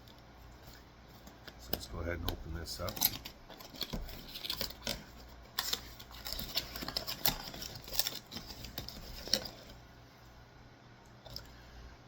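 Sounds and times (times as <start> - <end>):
cardboard box packaging rustling: 0.7 - 9.9.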